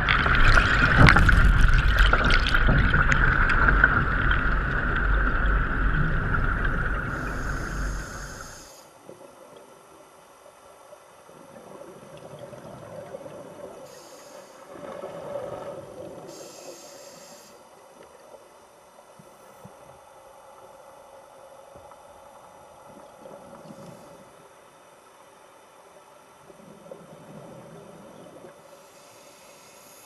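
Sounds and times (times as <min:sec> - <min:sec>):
exhaled bubbles gurgling: 0:00.0 - 0:09.4, 0:11.4 - 0:13.9
faint steady hum: 0:00.0 - 0:30.0
diver inhaling through regulator: 0:07.0 - 0:08.9, 0:13.9 - 0:14.7, 0:16.3 - 0:17.7, 0:28.7 - 0:30.0.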